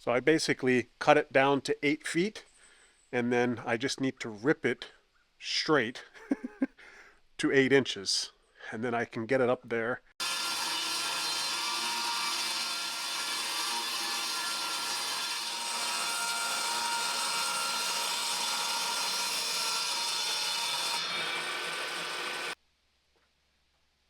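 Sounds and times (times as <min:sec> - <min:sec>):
power saw cutting wood: 0:10.2 - 0:22.6.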